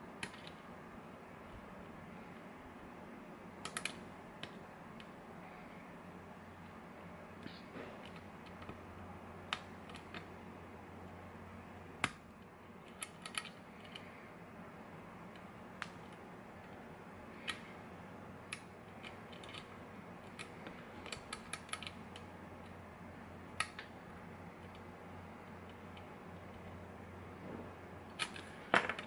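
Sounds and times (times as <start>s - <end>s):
lock pick clicking in a lock: 12.9s - 14.0s.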